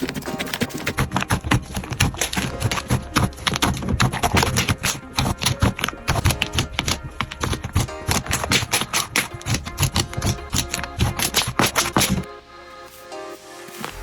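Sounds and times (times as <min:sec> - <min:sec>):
crunchy slime crackling: 0:00.0 - 0:12.3.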